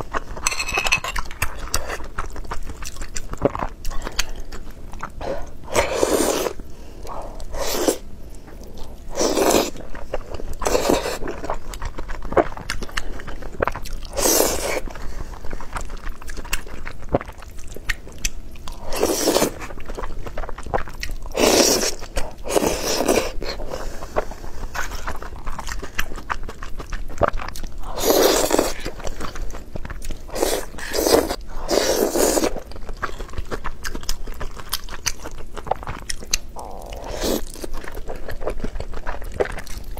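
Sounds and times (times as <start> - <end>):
chewing and biting: 24.2 - 39.9.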